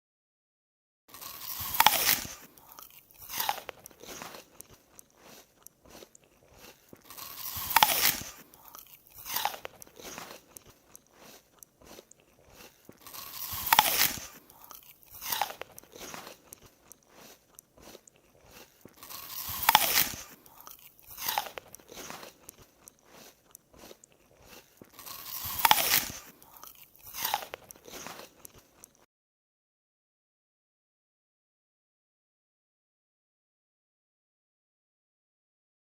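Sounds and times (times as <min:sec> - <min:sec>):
apple bite crunch: 0:01.1 - 0:29.1
chewing crunching: 0:01.1 - 0:29.1.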